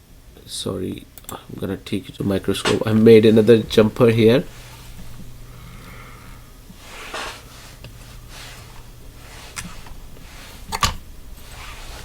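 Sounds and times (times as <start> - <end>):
steady low hum: 0.0 - 12.0
short breath-like hiss: 4.5 - 10.7.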